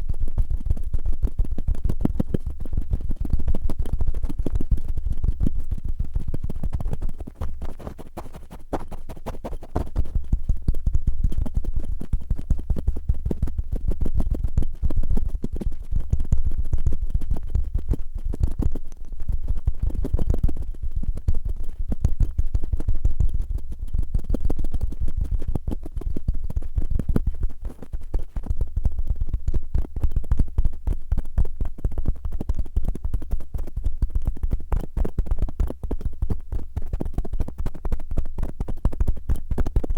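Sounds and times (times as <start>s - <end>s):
cotton swabs scraping microphone: 7.1s - 10.4s.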